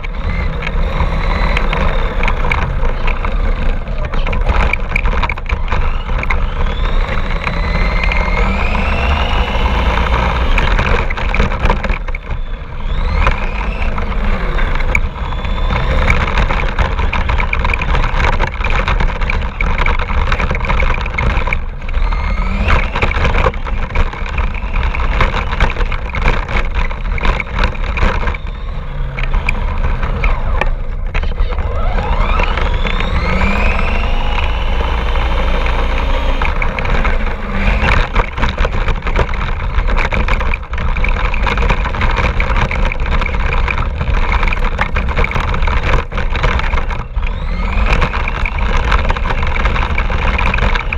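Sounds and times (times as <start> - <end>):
rc car motor whining: 0.0 - 50.9
low rumble: 21.5 - 50.9.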